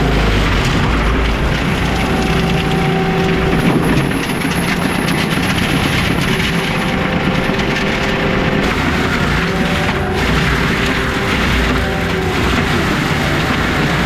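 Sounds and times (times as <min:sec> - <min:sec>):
clanking and rattling tracks: 0:00.0 - 0:14.0
diesel engine running under load: 0:00.0 - 0:14.0.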